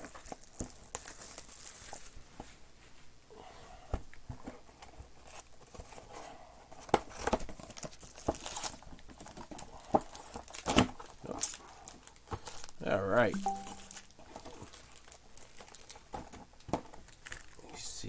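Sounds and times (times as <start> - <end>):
crinkling foil packs and cards: 0.0 - 2.2, 4.4 - 13.2, 14.2 - 18.0.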